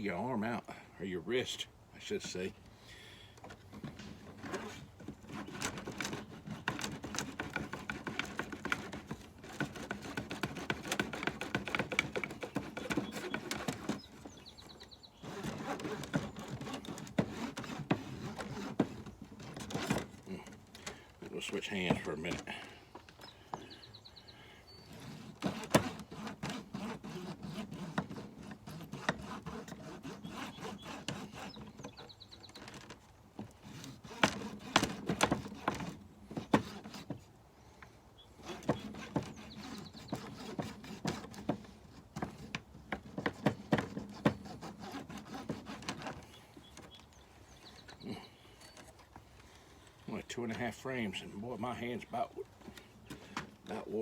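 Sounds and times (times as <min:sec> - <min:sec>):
wax scraping over plastic frame: 0:03.5 - 0:22.8.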